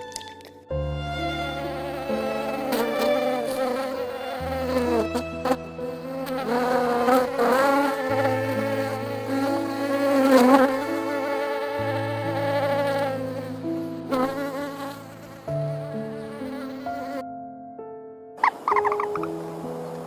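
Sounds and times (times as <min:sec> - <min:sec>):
wavering insect-like buzzing: 0:01.5 - 0:17.2.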